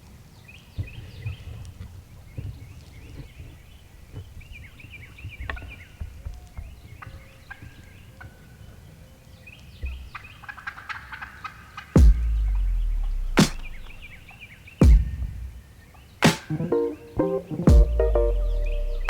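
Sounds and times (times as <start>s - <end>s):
turkeys gobbling: 10.1s - 12.0s.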